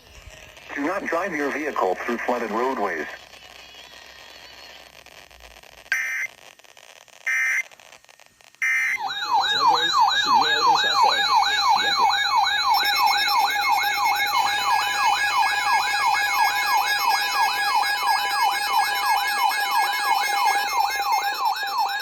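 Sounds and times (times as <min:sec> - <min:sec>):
electronic yelp alert tone: 0:08.6 - 0:22.0
steady beeping tones: 0:08.6 - 0:22.0.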